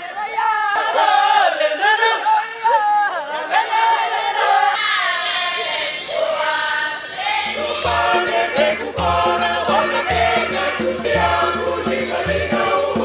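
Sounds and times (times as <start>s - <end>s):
group of voices singing: 3.5s - 13.0s.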